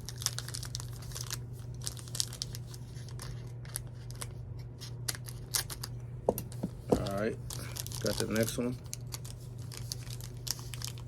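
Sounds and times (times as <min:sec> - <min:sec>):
wrapper tearing and crinkling: 0:00.0 - 0:04.3, 0:07.1 - 0:11.0
steady low hum: 0:00.0 - 0:11.0.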